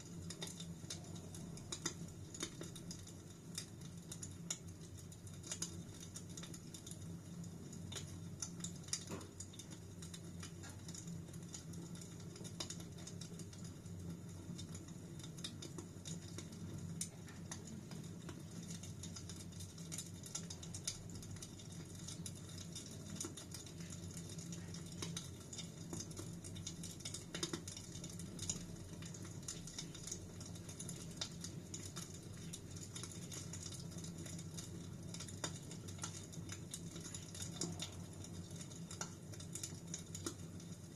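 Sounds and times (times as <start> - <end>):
fireplace fire crackling: 0.0 - 40.9.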